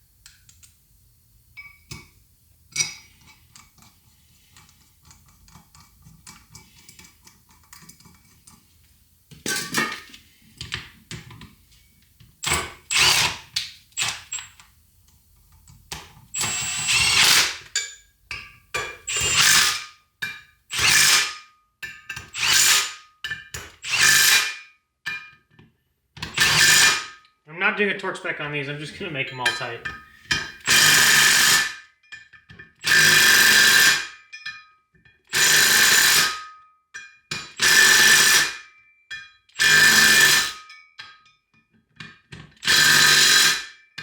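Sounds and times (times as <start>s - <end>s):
power tool tightening bolts: 12.4s - 14.5s, 16.3s - 17.7s, 19.1s - 19.9s, 20.7s - 21.3s, 22.2s - 23.0s, 23.7s - 24.6s, 26.2s - 27.1s, 30.6s - 31.7s, 32.8s - 34.1s, 35.3s - 36.4s, 37.6s - 38.6s, 39.6s - 40.6s, 42.6s - 43.6s.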